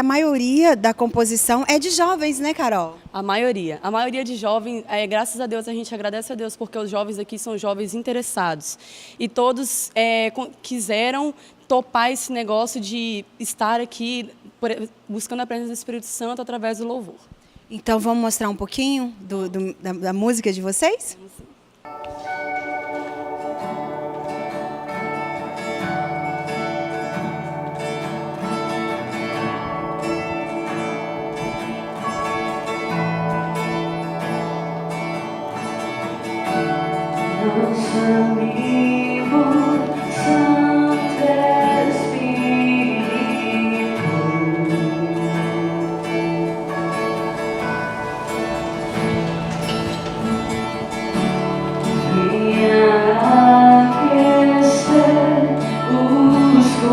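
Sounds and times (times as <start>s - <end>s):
worship band playing slow song: 21.9s - 56.9s
person singing: 37.2s - 48.0s, 51.8s - 56.9s.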